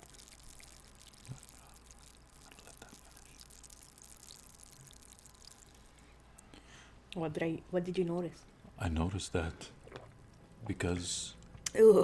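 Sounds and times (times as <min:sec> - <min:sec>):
soft chewing: 0:00.0 - 0:07.2.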